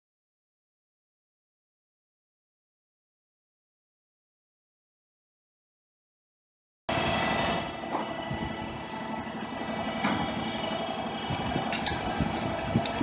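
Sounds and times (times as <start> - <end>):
heavy machinery engine running: 6.9 - 13.0.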